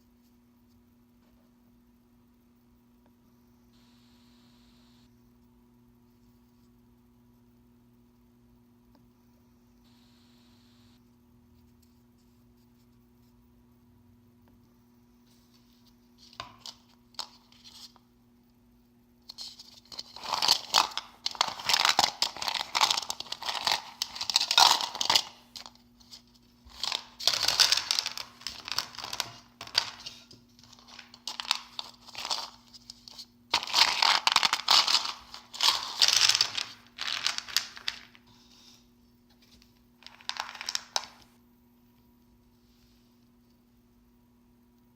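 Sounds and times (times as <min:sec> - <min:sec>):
candy wrapper tearing and crinkling: 0:19.8 - 0:38.2.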